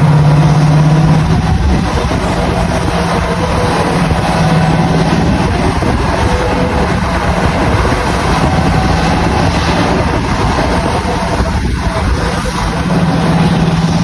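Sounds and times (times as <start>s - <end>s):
locomotive engine drone: 0.0s - 14.0s.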